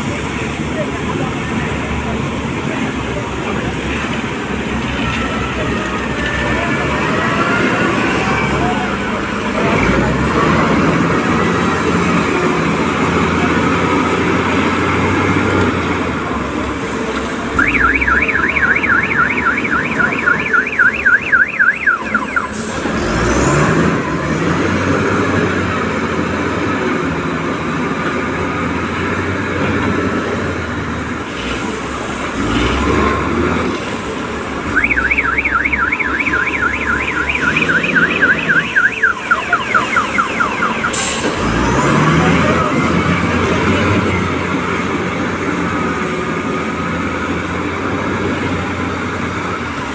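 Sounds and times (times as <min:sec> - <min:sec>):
diesel engines running: 0:00.0 - 0:49.9
warbling reversing alarm: 0:17.6 - 0:22.8, 0:34.7 - 0:41.2.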